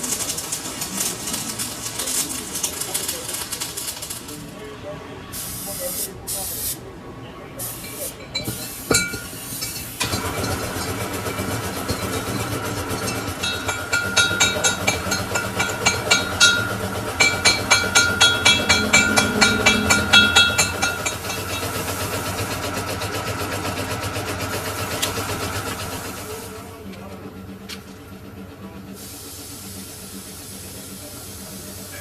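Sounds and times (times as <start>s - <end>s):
metal clinking: 7.8s - 22.1s
lathe running with whine: 8.2s - 32.0s.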